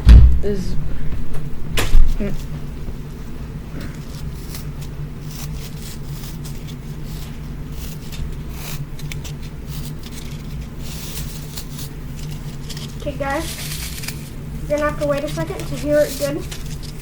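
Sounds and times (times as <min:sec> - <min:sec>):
steady low hum: 0:00.0 - 0:17.0
foam block crackling and rustling: 0:04.0 - 0:17.0.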